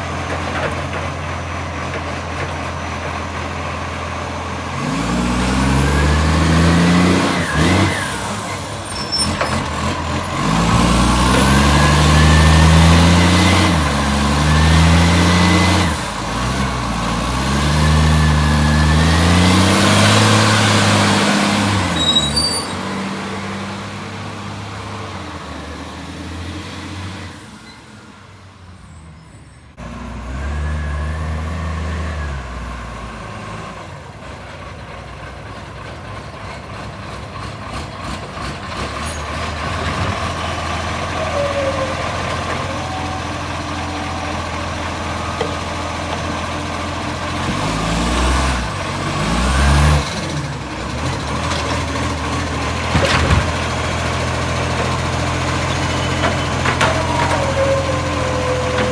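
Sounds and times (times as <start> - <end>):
diesel truck engine accelerating: 0.0 - 58.9.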